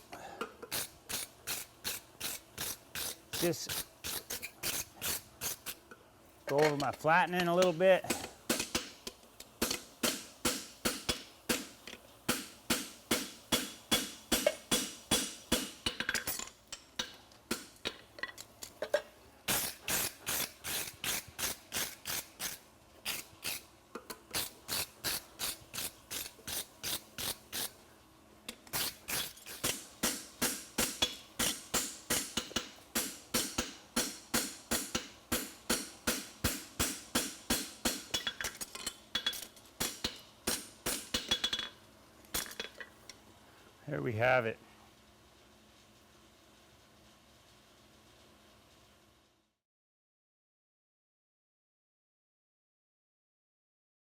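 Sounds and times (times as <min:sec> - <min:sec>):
hammer striking horseshoe on anvil: 0:09.6 - 0:16.2, 0:29.6 - 0:38.6, 0:39.2 - 0:41.8.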